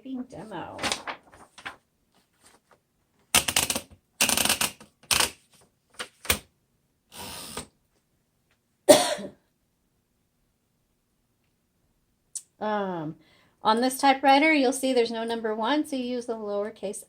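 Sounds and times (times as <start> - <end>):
typewriter clacking: 3.3 - 5.4.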